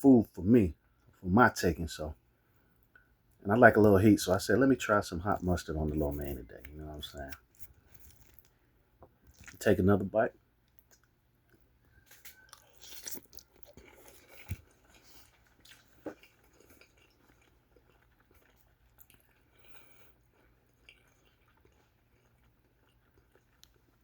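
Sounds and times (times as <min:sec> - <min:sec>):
person chewing noodles: 0:05.3 - 0:09.7, 0:10.6 - 0:24.0.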